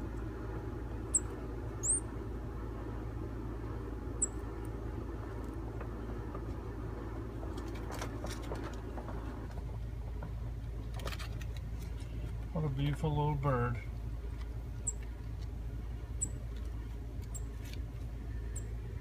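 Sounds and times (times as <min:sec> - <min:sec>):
steady low rumble: 0:00.0 - 0:19.0
small bird chirping: 0:01.0 - 0:02.2, 0:04.2 - 0:04.6, 0:14.8 - 0:15.2, 0:16.1 - 0:17.7, 0:18.3 - 0:18.8.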